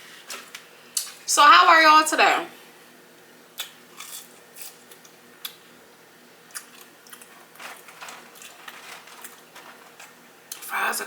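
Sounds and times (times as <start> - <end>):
crunching fries: 3.6 - 5.7, 6.4 - 11.0.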